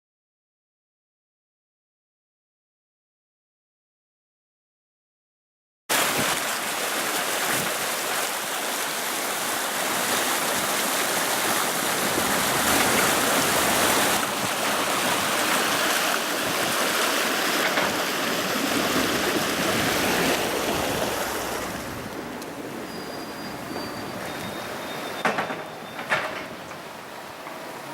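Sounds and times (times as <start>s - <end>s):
running water rushing: 5.9s - 27.9s.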